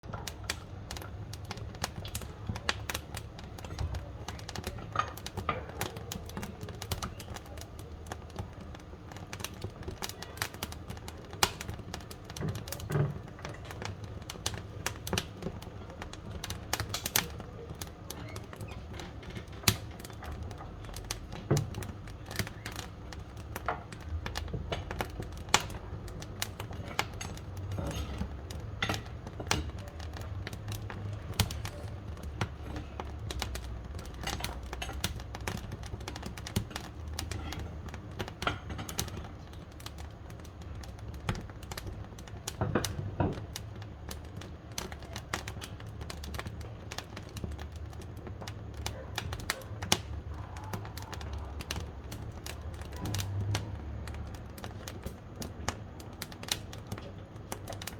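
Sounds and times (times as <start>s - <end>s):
low rumble of stove: 0.0s - 57.9s
wood fire crackling and popping: 0.0s - 57.9s.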